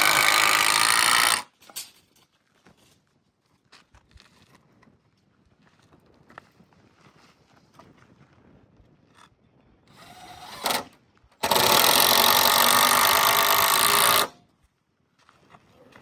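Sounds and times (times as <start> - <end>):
power tool running: 0.0 - 1.5, 9.9 - 14.4.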